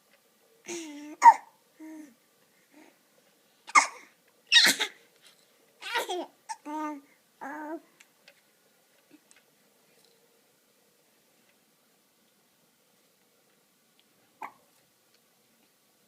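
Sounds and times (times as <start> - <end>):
baby laughing and babbling: 0.7 - 2.2, 5.8 - 7.8
baby hiccuping and coughing: 1.1 - 1.5, 3.7 - 5.0.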